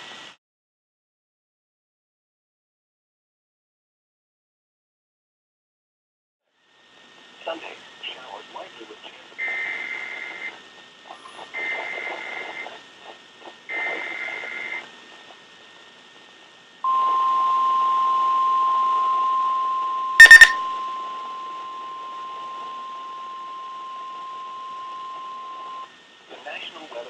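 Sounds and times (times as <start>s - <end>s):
rasping two-tone data bursts: 20.2s - 20.6s
steady alarm tone: 20.2s - 20.6s.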